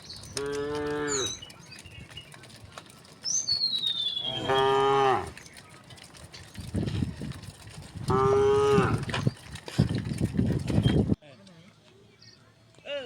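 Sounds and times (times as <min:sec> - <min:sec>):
cattle mooing: 0:00.4 - 0:01.4, 0:04.2 - 0:05.4, 0:08.1 - 0:09.1.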